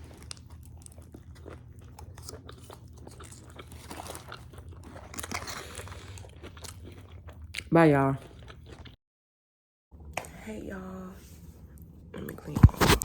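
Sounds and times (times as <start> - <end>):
person chewing crunchy food: 0.0 - 9.0, 12.6 - 13.0.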